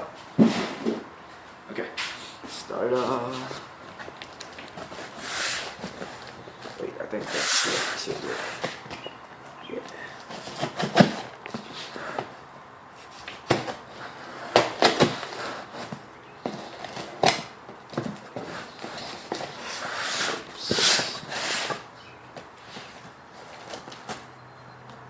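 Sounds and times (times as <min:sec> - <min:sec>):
knife cutting packing tape: 0:13.4 - 0:15.9, 0:18.5 - 0:21.9.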